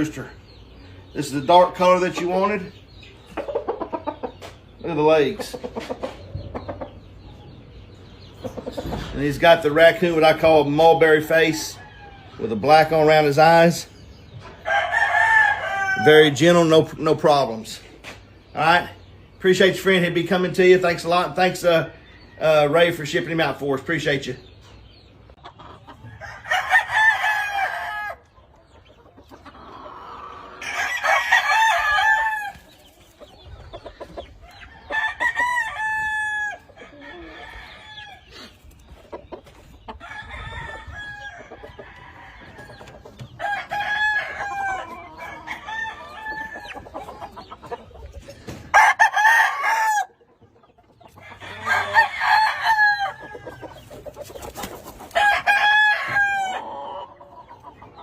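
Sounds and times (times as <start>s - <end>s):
roosters crowing: 10.5s - 16.8s, 25.9s - 28.4s, 29.4s - 38.6s, 39.5s - 58.0s.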